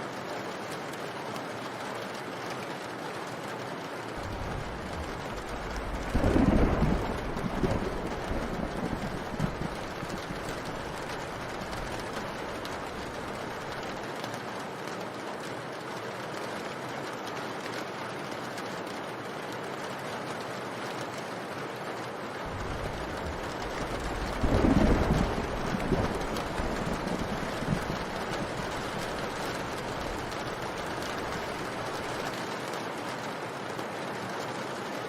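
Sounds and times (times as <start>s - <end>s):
steady rain falling: 0.0s - 35.0s
low rumble: 4.2s - 13.2s, 22.5s - 31.6s.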